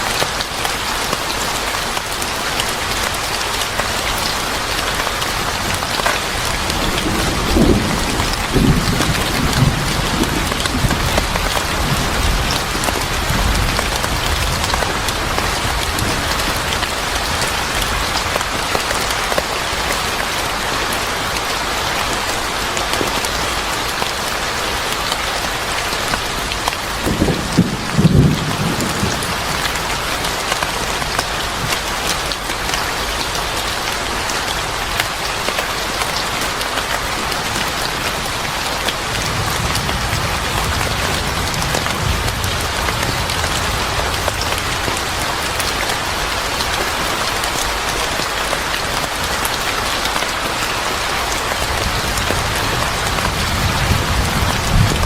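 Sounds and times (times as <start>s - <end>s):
rain pattering: 0.0s - 55.0s
low rumble of thunder: 6.4s - 18.1s, 26.8s - 30.2s, 39.2s - 45.2s, 51.6s - 55.0s.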